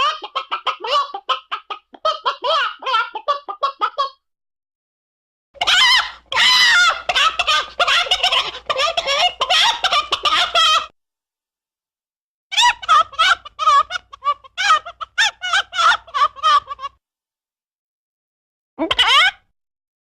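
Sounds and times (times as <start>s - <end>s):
chicken clucking and squawking: 0.0s - 4.2s, 5.6s - 10.9s, 12.6s - 17.0s.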